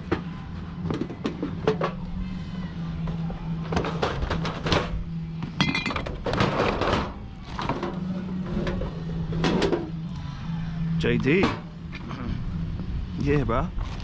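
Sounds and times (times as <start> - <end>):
glass bottles clinking: 5.6 - 6.2.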